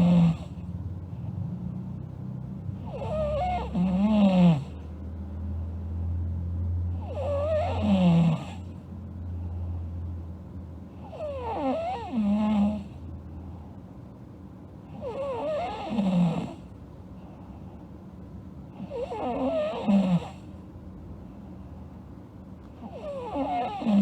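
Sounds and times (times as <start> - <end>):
girl snoring: 0.0 - 0.6, 2.8 - 4.8, 7.0 - 8.7, 11.0 - 12.9, 15.0 - 16.6, 18.8 - 20.4, 22.8 - 24.0
low steady hum: 0.0 - 24.0.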